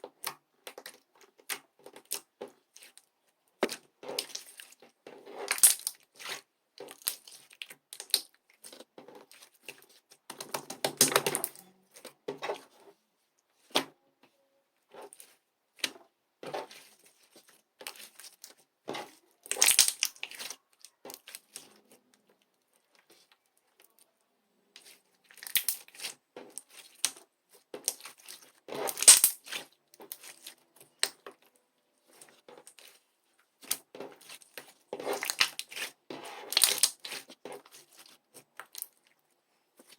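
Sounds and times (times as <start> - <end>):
tearing and crinkling: 16.6 - 21.8, 27.8 - 31.1, 33.6 - 39.2.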